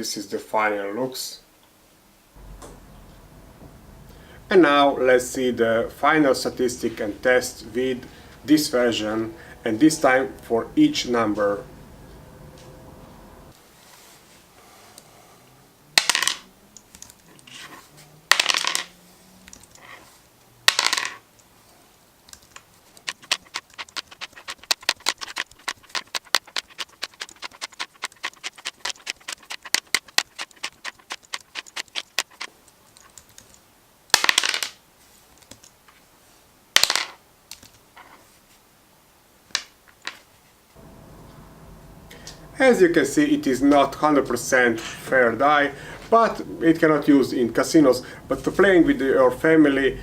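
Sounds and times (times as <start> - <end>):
rapid small clicks: 22.3 - 33.6
plastic die clacking on a mat: 22.4 - 32.5.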